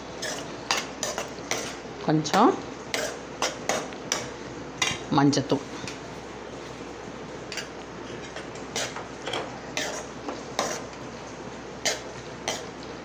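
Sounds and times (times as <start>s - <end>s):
spoon scraping cooking pan: 0.2s - 1.8s, 2.9s - 5.0s, 7.5s - 11.0s, 11.8s - 12.8s.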